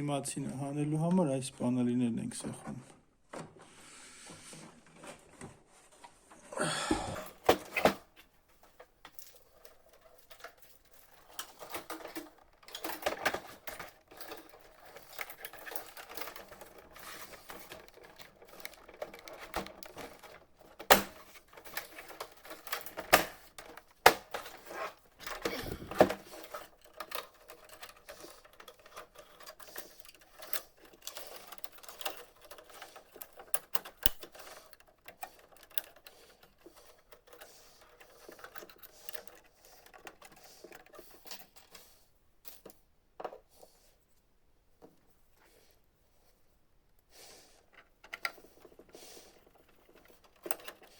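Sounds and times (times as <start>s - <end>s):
plastic parts clicking and snapping: 7.1s - 43.5s, 47.6s - 50.9s.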